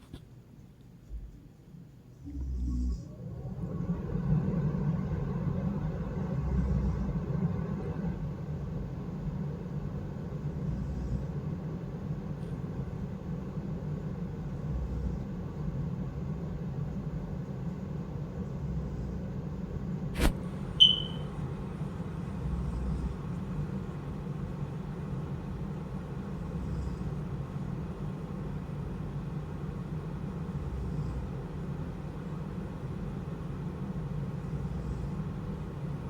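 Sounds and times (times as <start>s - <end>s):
sharp click: 20.2s - 21.2s
brief high beep: 20.8s - 21.3s.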